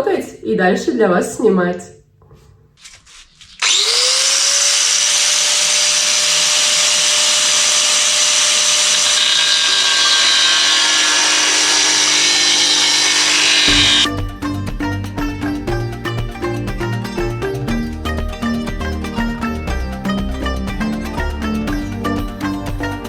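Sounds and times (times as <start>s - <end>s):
electric power tool whining: 3.5s - 14.2s.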